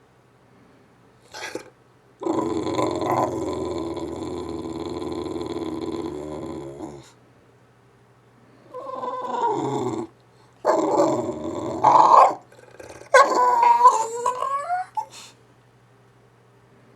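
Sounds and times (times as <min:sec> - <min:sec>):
dog growling calls: 0:01.3 - 0:07.1, 0:08.7 - 0:15.2.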